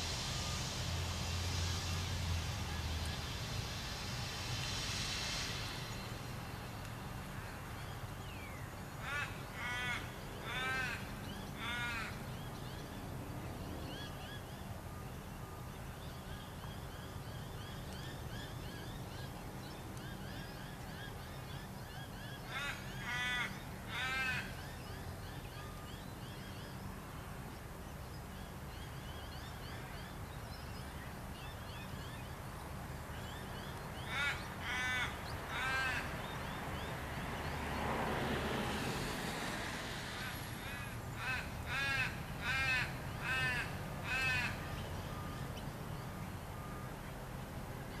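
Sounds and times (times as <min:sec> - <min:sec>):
crow-like bird cawing: 0:09.0 - 0:12.2, 0:22.5 - 0:24.6, 0:34.1 - 0:36.1, 0:40.2 - 0:44.7.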